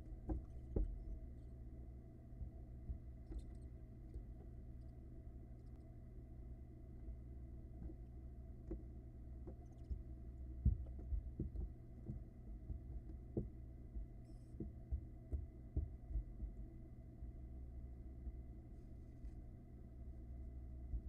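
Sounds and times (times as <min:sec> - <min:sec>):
steady low hum: 0:00.0 - 0:21.0
soft dull thumps on wooden floor: 0:00.2 - 0:01.2, 0:10.6 - 0:16.6.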